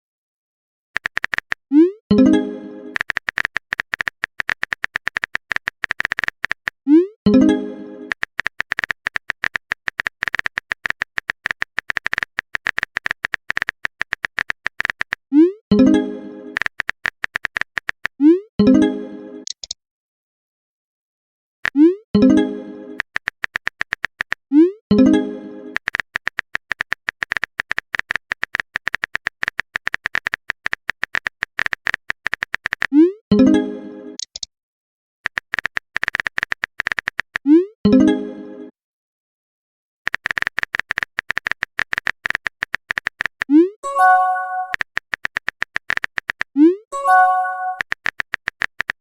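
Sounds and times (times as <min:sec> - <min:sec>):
phone keyboard typing clicks: 0:01.0 - 0:01.7, 0:02.9 - 0:06.8, 0:08.1 - 0:15.2, 0:16.6 - 0:18.2, 0:19.4 - 0:19.8, 0:23.0 - 0:24.4, 0:25.8 - 0:33.0, 0:34.2 - 0:34.5, 0:35.2 - 0:37.5, 0:40.1 - 0:49.0
message sent chime: 0:43.8 - 0:44.8, 0:47.0 - 0:47.8.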